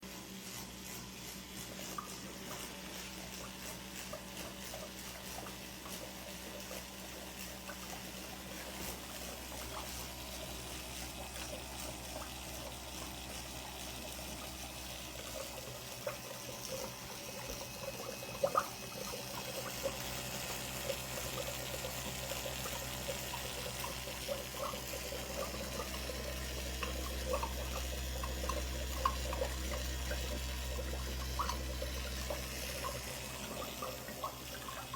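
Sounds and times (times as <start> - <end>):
bubbling ticks: 1.2 - 34.9
water trickling and splashing: 2.9 - 34.9
low steady hum: 7.1 - 34.9.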